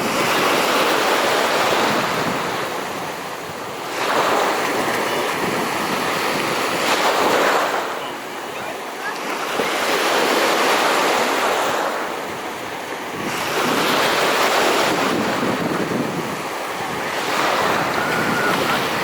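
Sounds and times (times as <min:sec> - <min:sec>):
wind on microphone: 0:00.0 - 0:08.0, 0:09.4 - 0:19.0
sea waves washing: 0:00.0 - 0:19.0.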